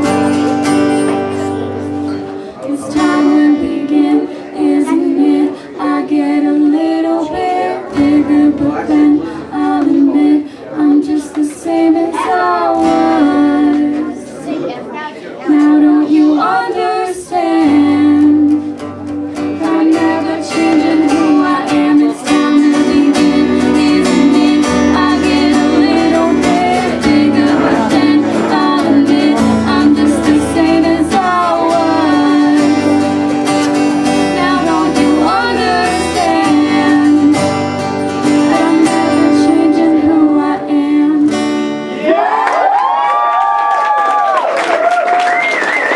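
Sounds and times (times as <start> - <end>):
person singing: 0.0 - 1.7, 2.4 - 14.3, 15.4 - 41.6
strummed guitar: 0.0 - 14.5, 15.5 - 42.1.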